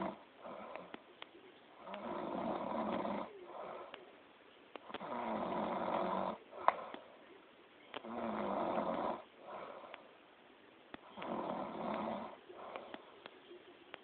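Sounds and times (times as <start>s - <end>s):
soft breath: 0.0s - 2.3s, 2.9s - 4.2s, 6.5s - 7.4s, 9.1s - 10.3s, 11.0s - 13.6s
person snoring loudly: 1.8s - 3.3s.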